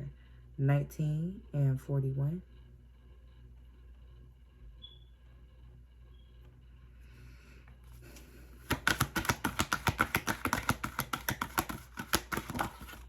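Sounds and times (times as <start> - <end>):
cards being shuffled: 8.0 - 13.0.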